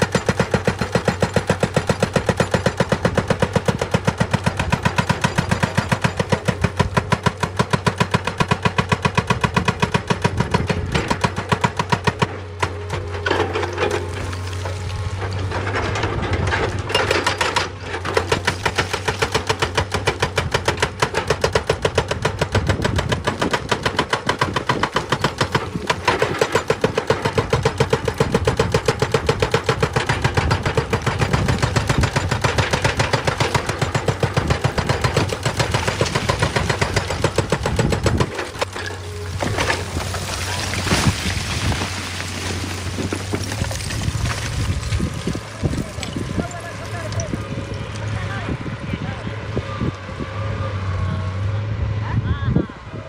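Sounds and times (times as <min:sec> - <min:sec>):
hydraulic breaker hammering stone: 0:00.0 - 0:14.6, 0:15.4 - 0:47.4
excavator engine: 0:00.0 - 0:53.0.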